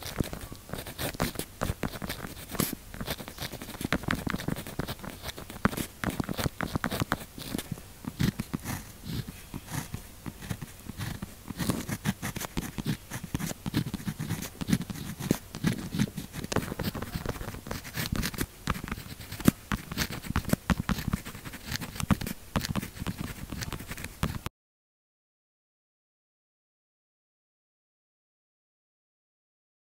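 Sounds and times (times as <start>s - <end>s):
pen scratching on paper: 0.0s - 24.5s.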